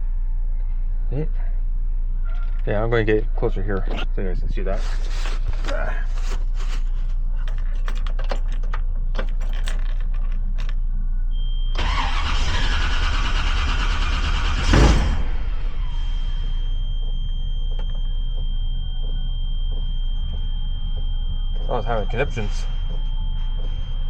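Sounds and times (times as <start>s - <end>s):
car engine humming: 3.5s - 24.0s
high steady whine: 9.5s - 24.0s.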